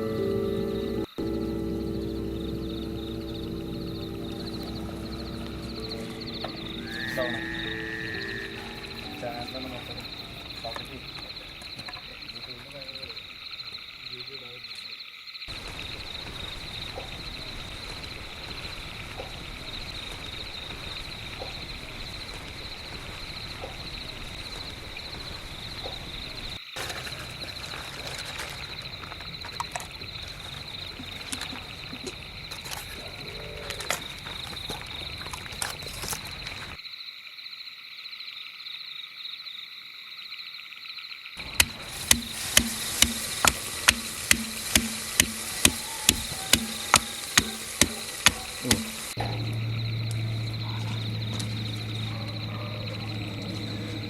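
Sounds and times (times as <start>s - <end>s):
frogs calling: 0.0s - 54.0s
insects chirping: 0.0s - 54.0s
knife chopping on a board: 41.6s - 49.2s.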